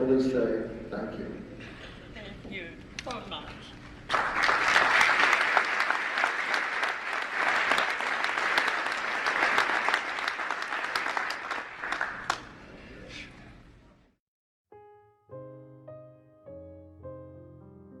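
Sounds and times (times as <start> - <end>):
crowd applauding: 4.0 - 13.2.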